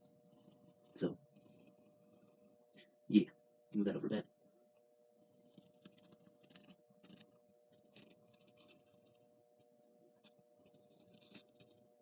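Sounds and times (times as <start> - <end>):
blade scratching foam board: 10.6 - 12.0.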